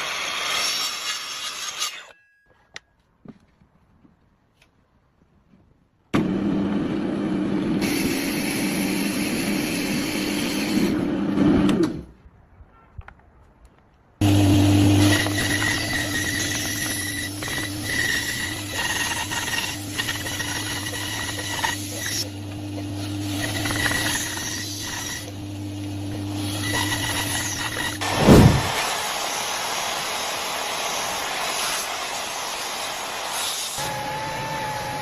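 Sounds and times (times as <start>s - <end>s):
wood lathe motor hum: 14.2s - 28.0s, 32.7s - 35.0s
tool scraping spinning wood: 14.7s - 25.4s, 26.2s - 29.3s.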